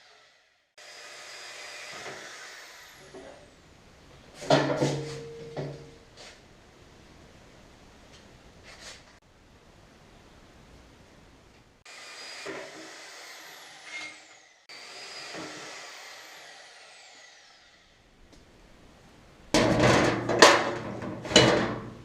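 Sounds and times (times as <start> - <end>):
metal clanks and bangs: 4.4 - 6.0, 19.6 - 22.0.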